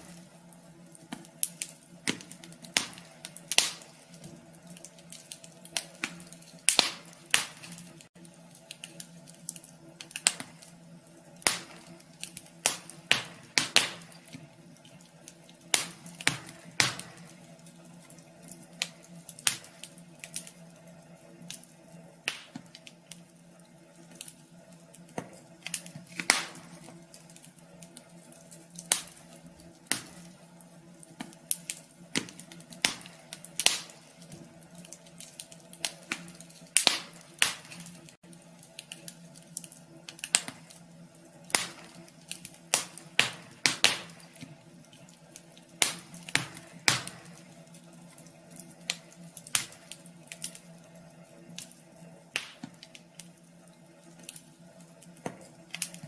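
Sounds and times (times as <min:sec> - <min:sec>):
faint steady hum: 0:00.0 - 0:56.0
wood fire crackling: 0:00.0 - 0:56.0.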